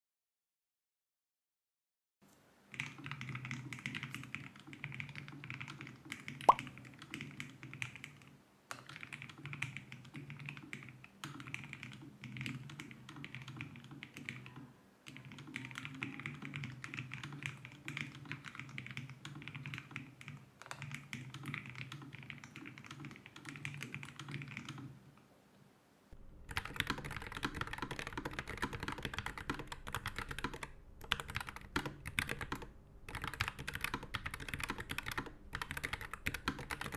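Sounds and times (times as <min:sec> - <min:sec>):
typing on mechanical keyboard: 0:02.7 - 0:25.0, 0:26.5 - 0:36.9
sharp keyboard click: 0:26.5 - 0:36.9.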